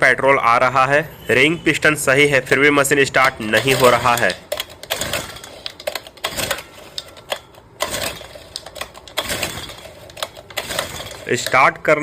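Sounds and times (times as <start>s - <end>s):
recoil starter rattling whir: 3.2s - 11.8s.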